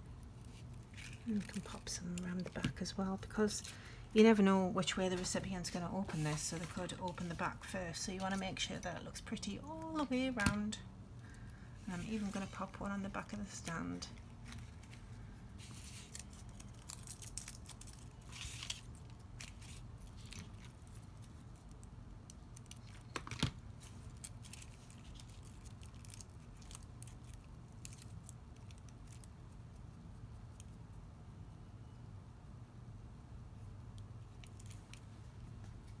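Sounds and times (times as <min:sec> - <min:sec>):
paper rustling: 0:05.0 - 0:08.7, 0:11.8 - 0:12.9, 0:13.5 - 0:21.3.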